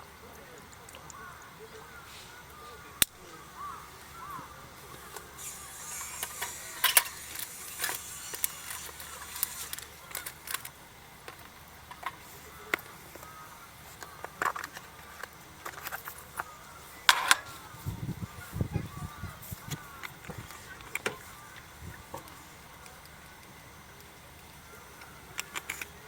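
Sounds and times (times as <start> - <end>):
small hard objects clicking: 5.0 - 17.5, 24.4 - 26.0.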